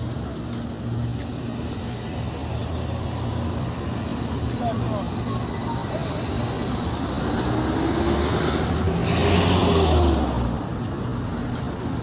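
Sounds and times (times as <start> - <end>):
background road traffic: 0.0 - 12.0
vehicle passing by: 7.0 - 10.6.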